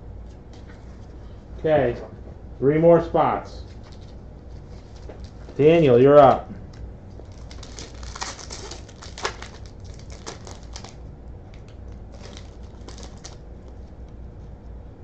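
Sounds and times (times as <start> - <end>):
wrapper tearing and crinkling: 7.2 - 13.4.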